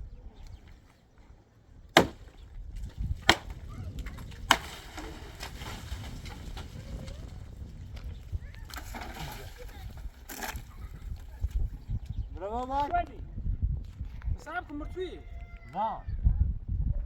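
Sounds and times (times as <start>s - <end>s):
sharp strikes on wood: 2.0s - 2.4s, 3.2s - 3.6s, 4.5s - 4.8s.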